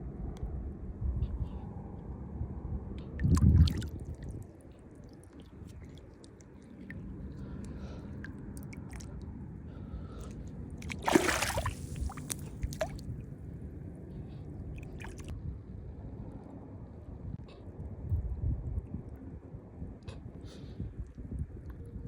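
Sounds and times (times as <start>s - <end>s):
water sloshing with wet clicks: 3.2s - 9.2s, 10.2s - 13.2s, 14.8s - 15.3s
short water splash: 10.8s - 13.0s.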